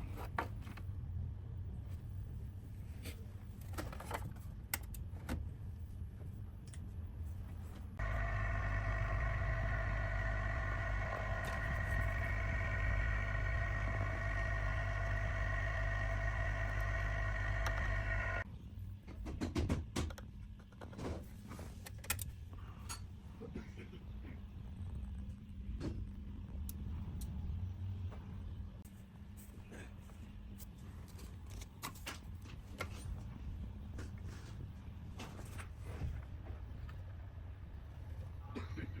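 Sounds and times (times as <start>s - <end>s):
electrical machine whine and hum: 8.0s - 18.6s.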